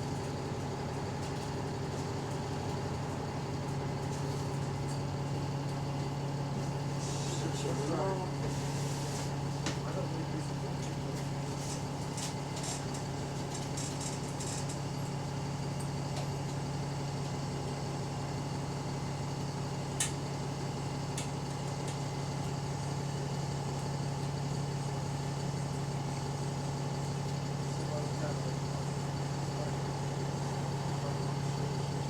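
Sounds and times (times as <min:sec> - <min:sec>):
bus diesel engine running: 0:05.2 - 0:14.5.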